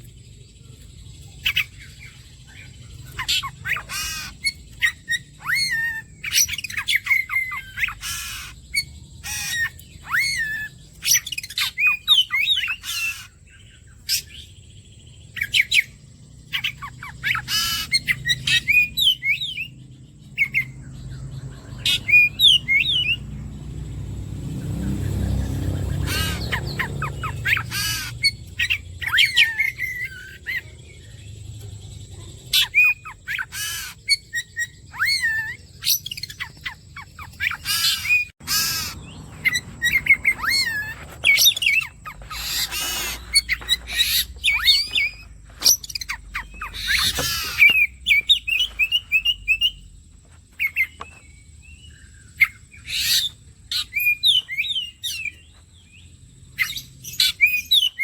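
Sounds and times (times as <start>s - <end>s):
harsh scratchy bird notes: 38.4s - 49.3s.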